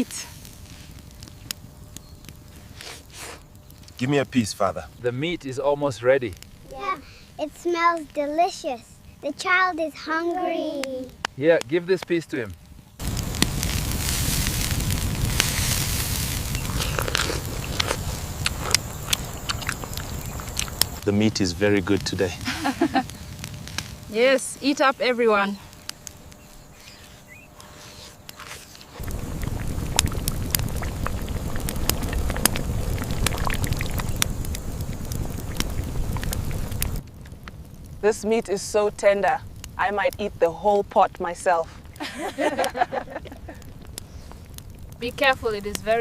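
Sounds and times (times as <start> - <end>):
wood fire crackling and popping: 0.0 - 46.0
low rumble: 13.0 - 27.8, 29.0 - 40.2.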